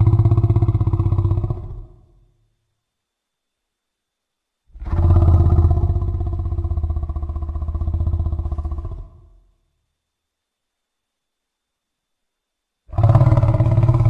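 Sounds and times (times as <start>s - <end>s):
low pulsing growl: 0.0s - 2.2s, 4.7s - 9.4s, 12.9s - 14.0s
monster roar: 4.8s - 9.2s, 12.9s - 14.0s.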